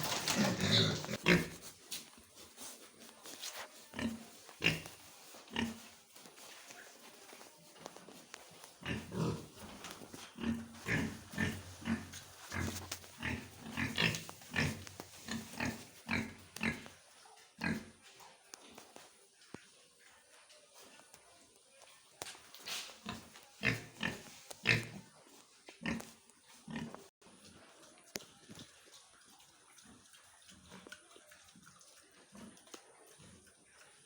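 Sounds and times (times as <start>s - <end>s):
pigs grunting: 0.0s - 1.6s, 8.8s - 16.9s.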